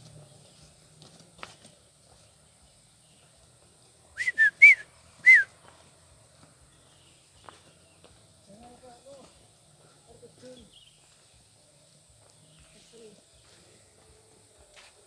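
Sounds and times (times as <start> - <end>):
short whistled notes: 4.2 - 5.5.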